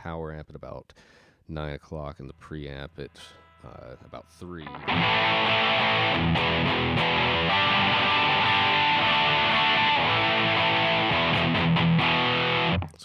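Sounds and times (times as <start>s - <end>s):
electric guitar strummed chords: 4.6s - 13.0s.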